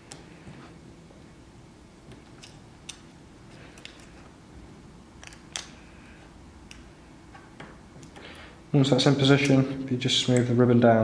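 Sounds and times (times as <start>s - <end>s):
faint clicks of small parts: 2.2s - 4.3s, 5.2s - 5.8s, 6.6s - 6.9s.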